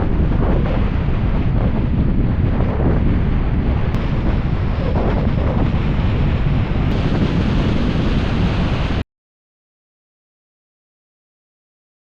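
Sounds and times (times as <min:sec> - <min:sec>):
wind buffeting microphone: 0:00.0 - 0:09.0.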